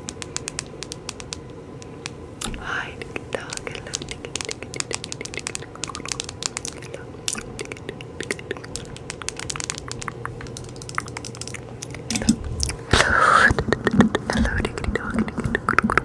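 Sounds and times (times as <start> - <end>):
crackling and clicking: 0.0 - 16.0
steady low hum: 0.0 - 16.0.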